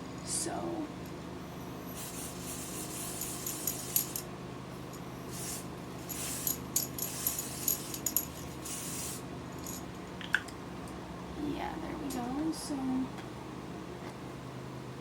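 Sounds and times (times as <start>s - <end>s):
aerosol spray hissing: 1.7s - 4.2s, 5.1s - 9.3s.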